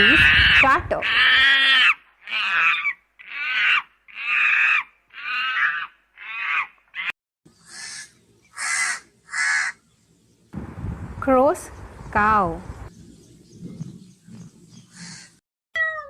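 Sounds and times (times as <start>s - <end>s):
crow cawing: 0.0s - 9.8s, 15.0s - 15.4s.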